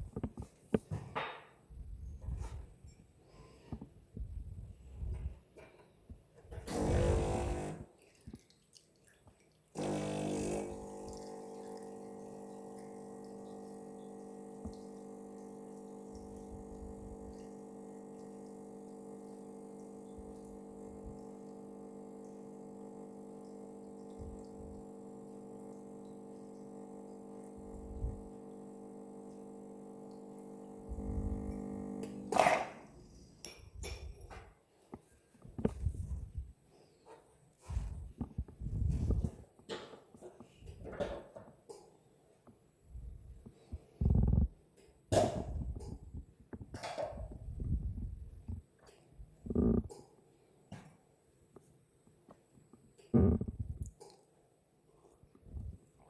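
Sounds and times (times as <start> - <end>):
espresso machine pump humming: 6.6 - 7.9, 9.8 - 32.7.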